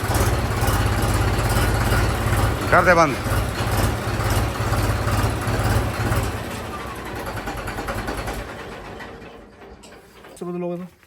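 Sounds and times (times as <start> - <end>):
tractor diesel engine running: 0.0 - 11.0.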